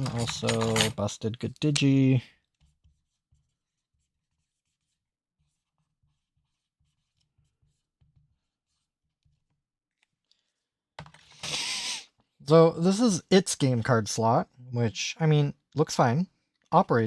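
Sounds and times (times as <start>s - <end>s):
pencil writing on paper: 2.6s - 10.0s.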